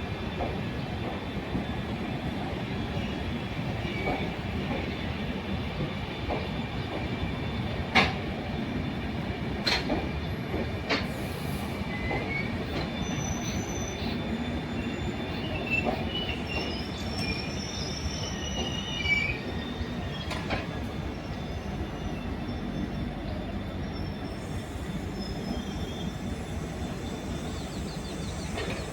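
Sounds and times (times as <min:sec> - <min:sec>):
train wheels rumbling on track: 0:00.0 - 0:28.9
clanks over rail joints: 0:07.9 - 0:08.2, 0:09.6 - 0:11.2, 0:20.2 - 0:21.0.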